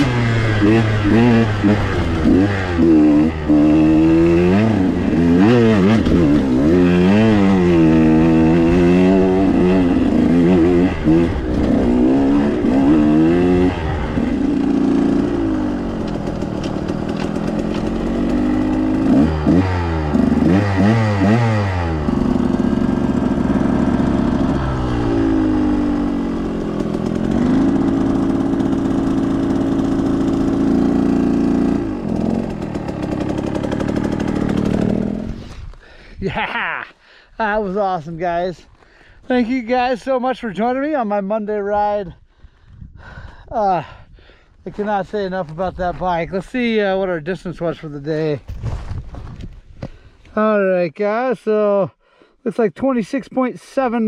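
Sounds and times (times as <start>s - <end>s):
two-stroke motorcycle engine revving: 0.0s - 35.7s.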